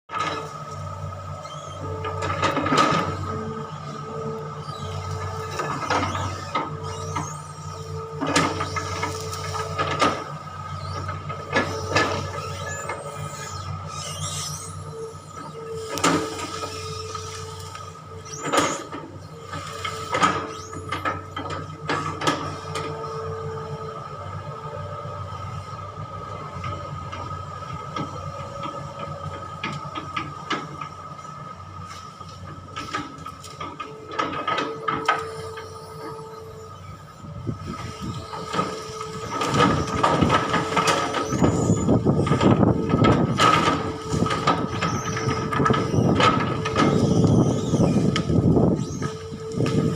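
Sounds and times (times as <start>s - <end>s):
excavator engine hum: 0.1s - 49.9s
squeal: 1.4s - 1.9s, 12.2s - 15.2s, 44.7s - 46.2s, 46.8s - 49.2s.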